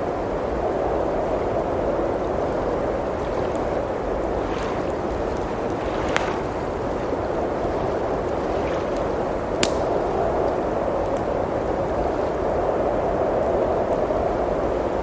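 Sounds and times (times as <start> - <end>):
blizzard wind blowing: 0.0 - 15.0
wood fire crackling: 2.3 - 12.4.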